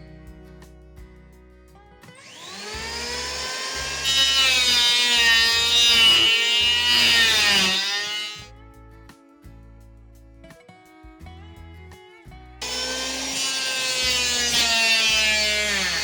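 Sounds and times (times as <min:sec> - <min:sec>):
background music: 0:00.0 - 0:16.0
power tool cutting wood: 0:02.1 - 0:08.5, 0:12.6 - 0:16.0
power tool motor whining: 0:02.2 - 0:08.5, 0:12.6 - 0:16.0.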